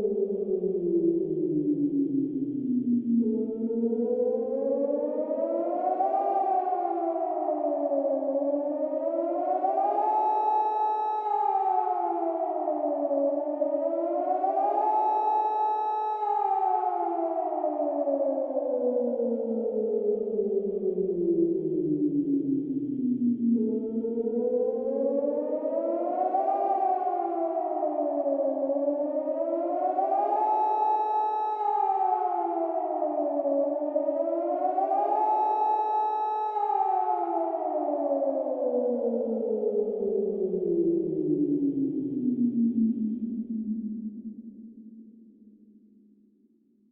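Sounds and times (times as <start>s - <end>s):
air-raid siren wailing: 2.8s - 44.0s.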